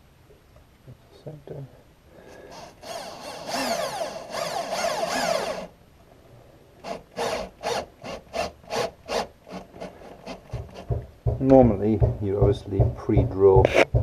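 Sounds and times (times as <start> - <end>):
cordless drill driving screw into wood: 2.5 - 5.7, 6.8 - 11.0.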